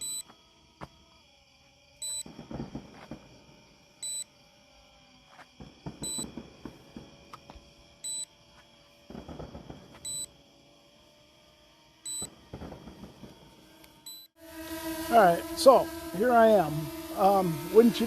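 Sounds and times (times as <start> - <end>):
fireworks crackling rumble: 2.2 - 3.6, 5.6 - 7.6, 9.0 - 10.4, 12.2 - 14.0.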